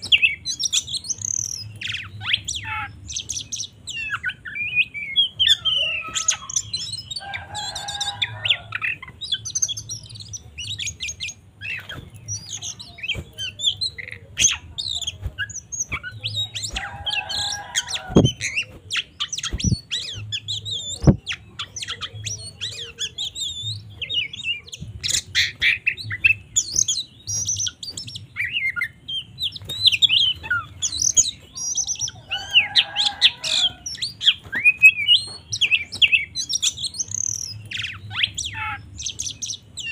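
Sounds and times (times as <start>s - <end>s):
harsh rasping bird calls: 0.0s - 39.9s
bird chirping and whistling: 9.2s - 39.9s.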